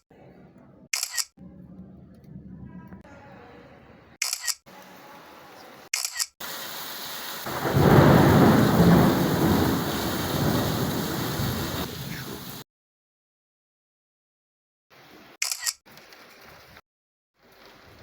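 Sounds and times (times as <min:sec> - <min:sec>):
short clicks: 0:01.0 - 0:01.3, 0:04.2 - 0:04.7, 0:05.9 - 0:06.4, 0:15.4 - 0:16.2
steady rain: 0:06.4 - 0:12.6
rolling thunderclap: 0:07.4 - 0:12.6.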